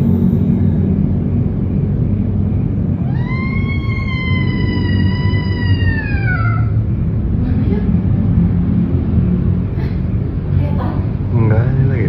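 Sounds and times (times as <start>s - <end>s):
steady low rumble: 0.0s - 12.0s
long wailing animal call: 3.0s - 7.1s.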